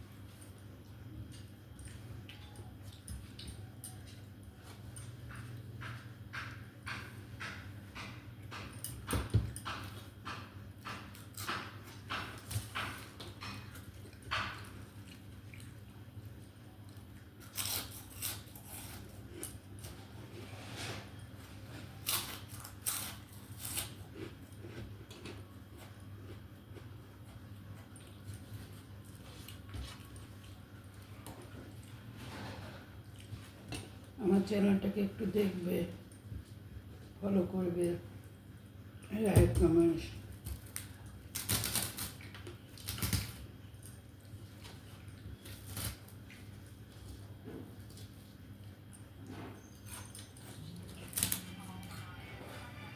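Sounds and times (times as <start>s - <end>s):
crunching and chewing food: 0.0s - 34.2s, 40.0s - 52.9s
steady low hum: 42.7s - 52.9s.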